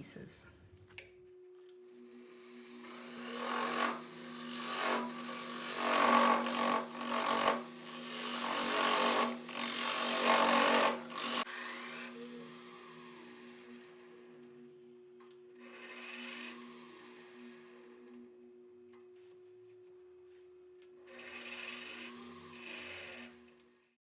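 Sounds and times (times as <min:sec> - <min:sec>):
wood lathe humming: 0:02.1 - 0:13.6
gouge cutting spinning wood: 0:02.5 - 0:12.1.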